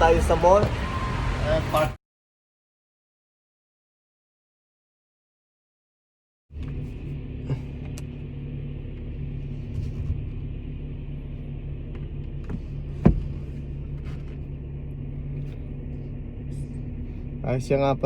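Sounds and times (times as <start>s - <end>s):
car engine rumbling: 0.0s - 2.0s, 6.5s - 18.0s.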